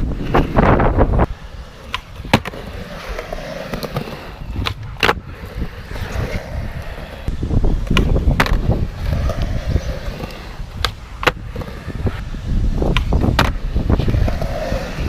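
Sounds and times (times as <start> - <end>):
skateboard wheels rolling on concrete: 0.0 - 15.0
wind on microphone: 0.0 - 15.0
skateboard clacks: 1.8 - 12.2, 12.8 - 15.0.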